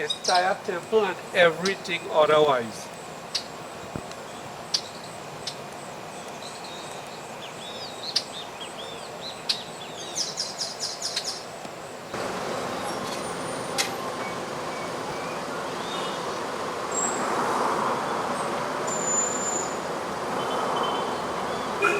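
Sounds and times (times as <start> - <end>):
birds chirping: 0.0 - 21.9
outdoor background noise: 0.0 - 21.9
steady rush of noise: 0.0 - 21.9
sharp ticks: 2.8 - 7.2.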